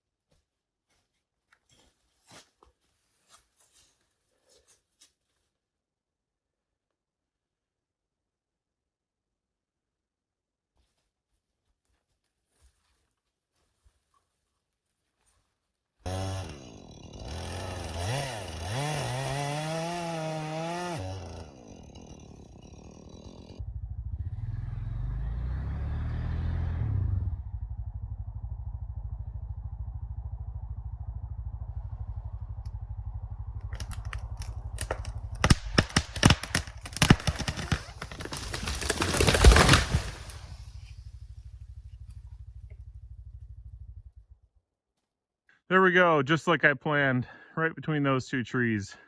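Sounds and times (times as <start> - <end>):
tree crashing down: 16.1 - 23.6, 33.6 - 42.1
tree trunk cracking: 16.1 - 23.6, 33.6 - 41.5
small engine revving: 16.1 - 43.9
atv engine running: 23.5 - 44.5.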